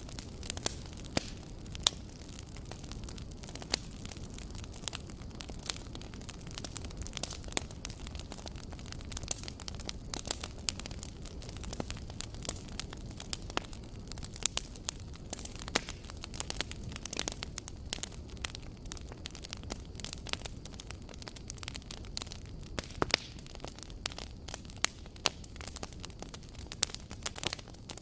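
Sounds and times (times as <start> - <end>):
burning wood crackling: 0.0 - 28.0
campfire flames rumbling: 0.0 - 28.0.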